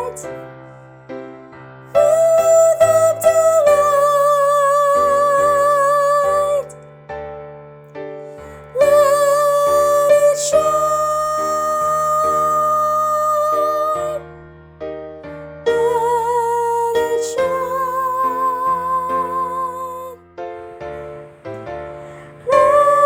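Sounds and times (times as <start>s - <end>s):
woman singing with vibrato: 0.0s - 0.3s, 2.0s - 6.7s, 8.7s - 14.2s, 15.7s - 20.2s, 22.0s - 23.0s.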